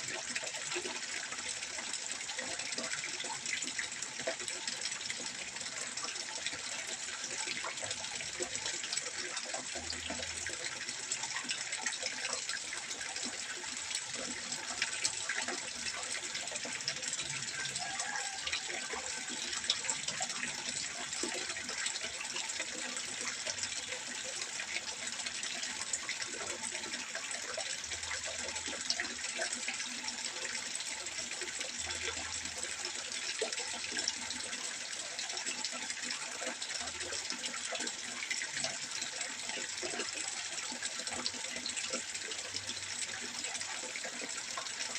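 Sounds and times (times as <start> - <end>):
water trickling into a pond: 0.0 - 44.9.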